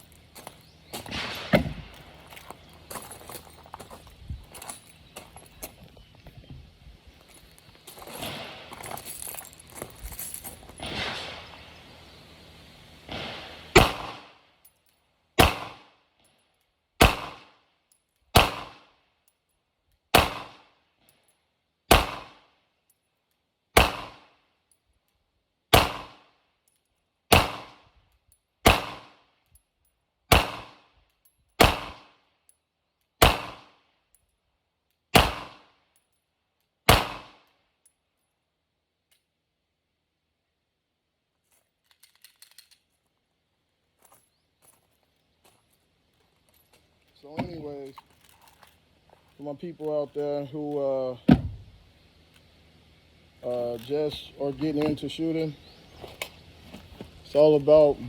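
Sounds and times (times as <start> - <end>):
rustling handling noise: 2.0 - 10.8, 41.3 - 50.8
pistol shots: 13.1 - 14.4, 15.4 - 15.9, 17.0 - 17.6, 18.3 - 18.9, 20.1 - 20.7, 21.9 - 22.5, 23.8 - 24.3, 25.7 - 26.3, 27.3 - 27.8, 28.6 - 29.2, 30.3 - 30.9, 31.6 - 32.2, 33.2 - 33.8, 35.1 - 35.7, 36.9 - 37.4.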